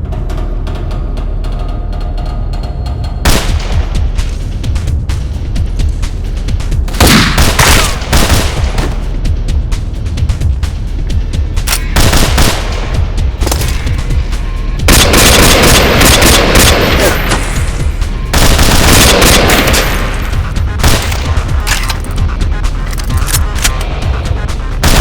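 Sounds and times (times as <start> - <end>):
low background music: 0.0 - 25.0
gunshots: 3.3 - 4.1, 6.9 - 9.1, 11.7 - 14.2, 14.9 - 24.0
automatic gunfire bursts: 14.9 - 17.2, 18.4 - 20.0.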